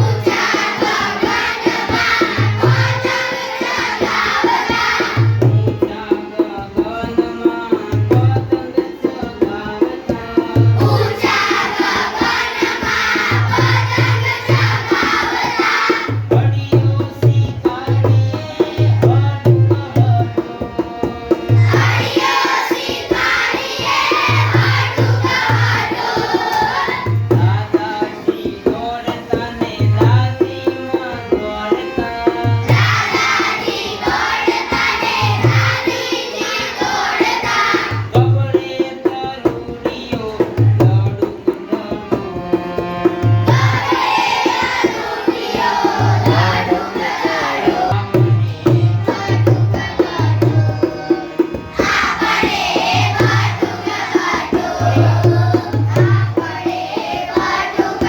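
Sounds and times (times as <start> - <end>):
children's song singing: 0.0 - 58.0
steady drum beat: 0.0 - 58.0.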